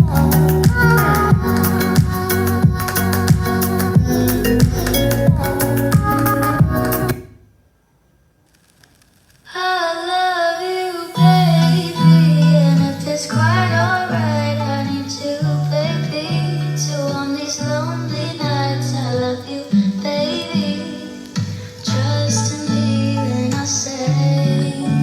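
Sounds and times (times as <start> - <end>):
woman singing: 0.0 - 7.2, 9.5 - 25.0
bass line: 0.0 - 7.3, 11.2 - 17.0
guitar: 0.0 - 7.4, 10.8 - 25.0.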